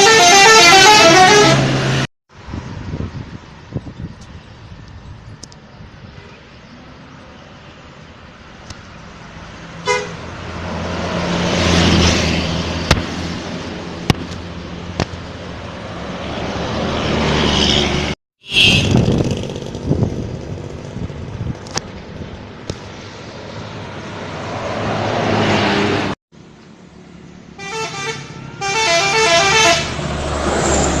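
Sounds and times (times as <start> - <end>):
multi-tone bus air horn tune: 0.0 - 2.1, 9.8 - 10.2, 18.4 - 19.0, 27.6 - 30.0
buses passing: 0.0 - 31.0.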